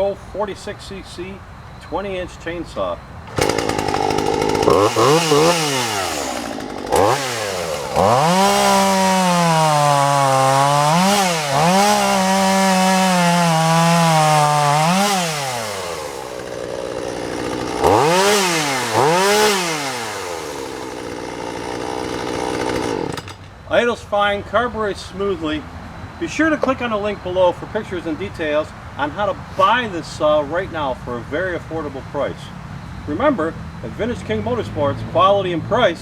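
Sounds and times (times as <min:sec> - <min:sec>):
chainsaw engine revving and idling: 0:03.2 - 0:23.5.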